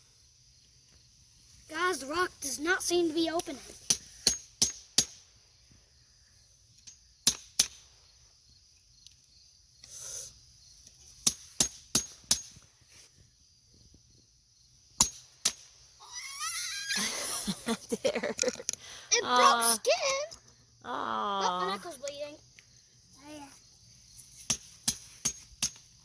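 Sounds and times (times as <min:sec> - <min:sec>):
hammer striking rock: 0:03.9 - 0:05.2, 0:07.2 - 0:07.8, 0:11.2 - 0:12.5, 0:15.0 - 0:15.6, 0:24.4 - 0:25.8.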